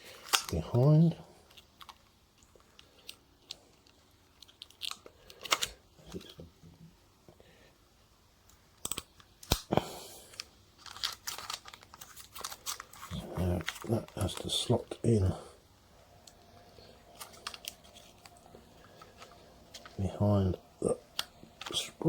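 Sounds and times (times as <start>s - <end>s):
film crinkling rustles: 0.0s - 6.4s, 10.2s - 15.4s, 16.2s - 22.0s.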